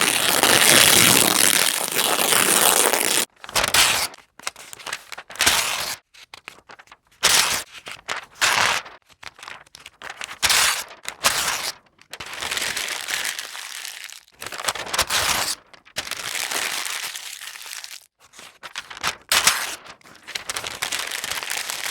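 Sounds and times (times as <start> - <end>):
paper tearing and crumpling: 0.0 - 4.2, 10.4 - 21.9.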